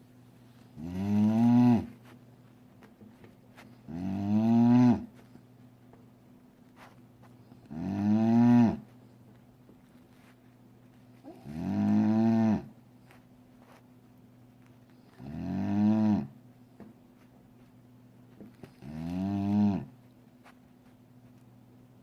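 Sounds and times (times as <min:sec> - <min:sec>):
dog snoring: 0:00.8 - 0:02.0, 0:03.9 - 0:05.1, 0:07.7 - 0:08.9, 0:11.2 - 0:12.7, 0:15.2 - 0:16.4, 0:18.7 - 0:19.9.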